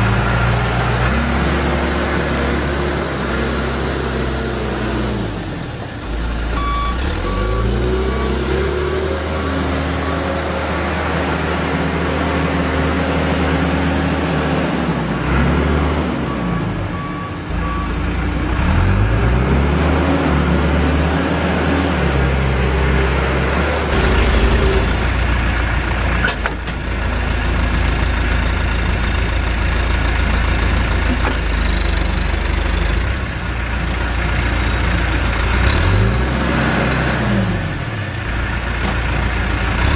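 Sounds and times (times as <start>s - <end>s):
diesel engine revving: 0.0s - 39.9s
reversing alarm beeping: 6.5s - 10.8s, 15.7s - 18.0s.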